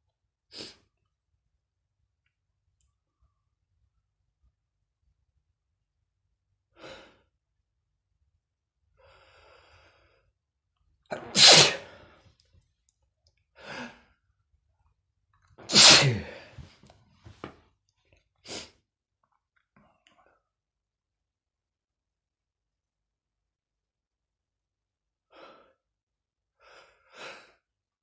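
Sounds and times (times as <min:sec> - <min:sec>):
man sneezing: 0:11.1 - 0:12.0, 0:15.6 - 0:16.6.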